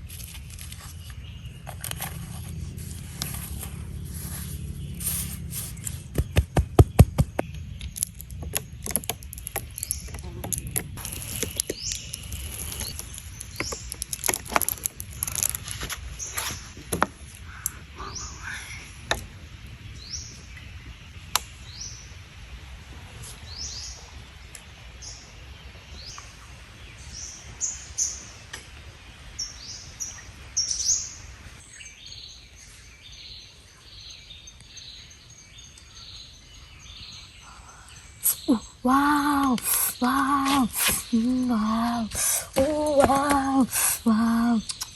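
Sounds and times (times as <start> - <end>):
birds chirping: 0.0 - 44.9
sharp knocks and clicks: 6.1 - 10.9.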